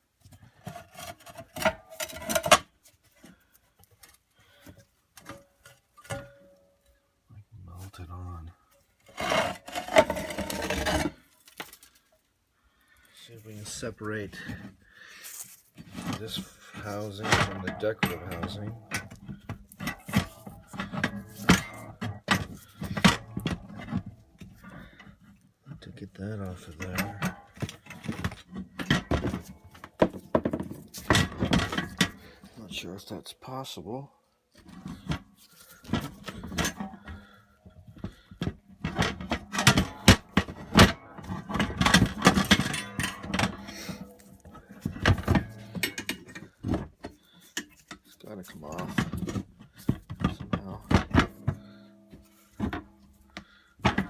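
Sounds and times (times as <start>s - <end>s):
metal knocks and clanks: 15.8s - 32.8s, 34.6s - 54.0s.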